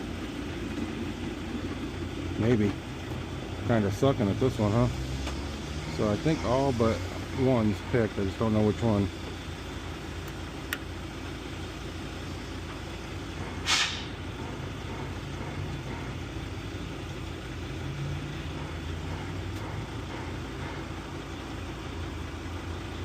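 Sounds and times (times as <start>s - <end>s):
vehicle engine idling: 0.0s - 23.0s
short hiss: 13.6s - 14.2s.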